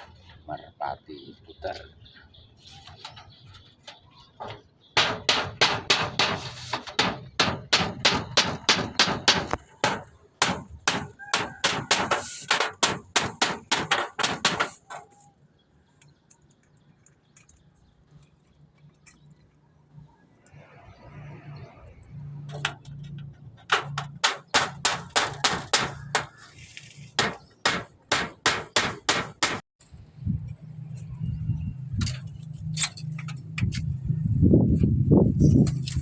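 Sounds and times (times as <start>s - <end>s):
hammer blows: 5.0s - 15.1s, 23.6s - 26.5s.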